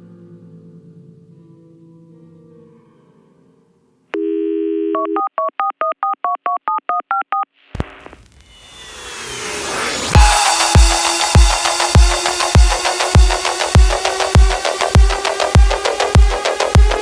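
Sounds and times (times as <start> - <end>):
telephone dial tone: 4.2 - 7.4
rising whoosh: 7.8 - 14.7.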